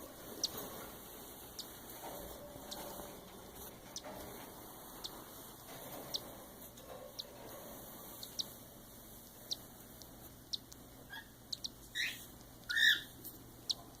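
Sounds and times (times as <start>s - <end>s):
chicks peeping: 0.0s - 14.0s
longer louder chick calls: 10.5s - 13.8s.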